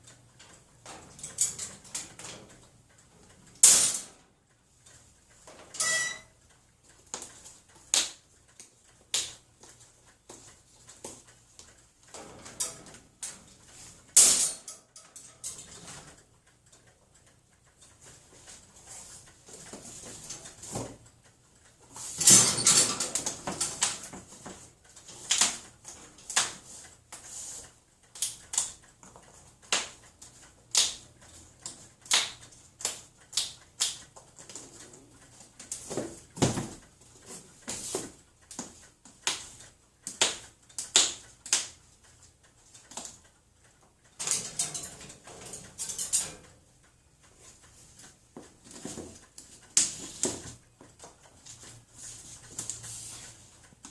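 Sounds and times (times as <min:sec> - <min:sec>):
cage doors banging and rattling: 0:03.5 - 0:04.2, 0:12.2 - 0:13.5, 0:14.1 - 0:16.2, 0:22.1 - 0:24.3, 0:44.2 - 0:46.4.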